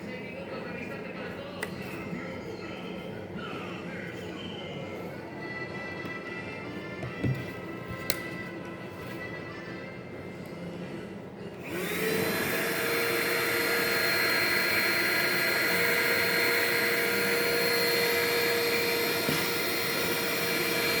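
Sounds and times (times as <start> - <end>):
vacuum cleaner motor whining: 11.6 - 21.0.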